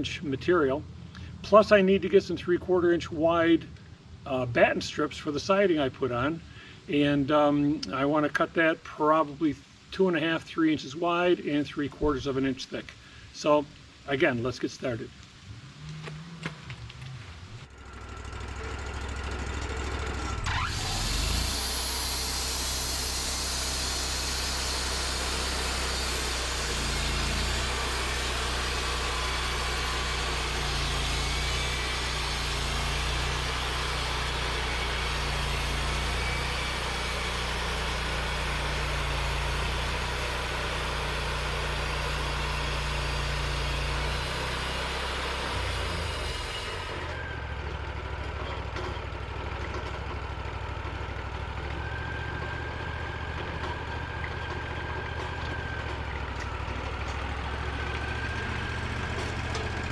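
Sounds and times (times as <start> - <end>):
sawmill engine running: 15.6 - 59.9.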